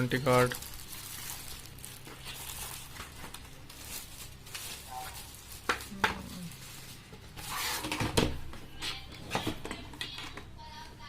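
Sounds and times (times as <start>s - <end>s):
packaging rustle: 0.0s - 7.9s
plastic packaging clicks and knocks: 4.6s - 6.3s.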